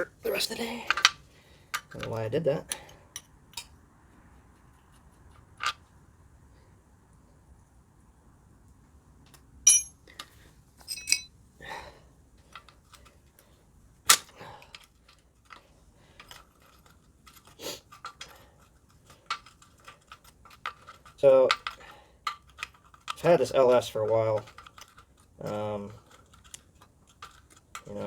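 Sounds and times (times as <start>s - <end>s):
tools and metal parts clinking: 0.8s - 3.8s, 9.6s - 11.4s, 14.1s - 28.0s
ringing metallic clank: 9.7s - 10.0s, 10.8s - 11.3s.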